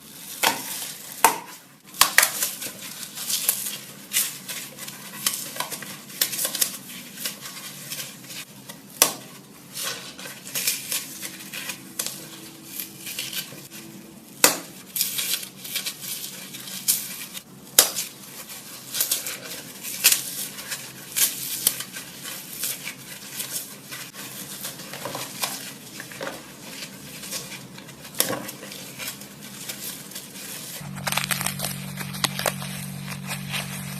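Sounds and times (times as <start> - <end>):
floral foam crunching: 26.7 - 33.9.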